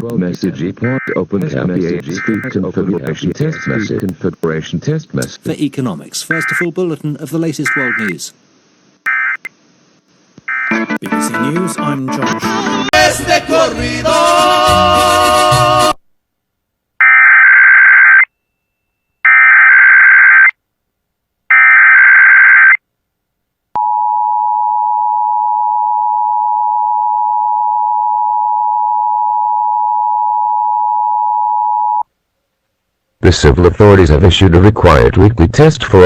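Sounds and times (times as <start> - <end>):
broadcast program audio: 0.0 - 8.5, 10.6 - 16.0, 33.2 - 36.0
digital data burst screech: 6.3 - 6.7.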